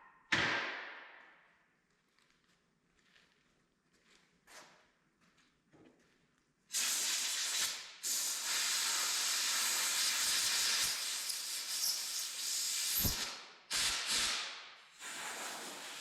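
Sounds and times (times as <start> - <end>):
welding arc crackling hiss: 6.7 - 16.0.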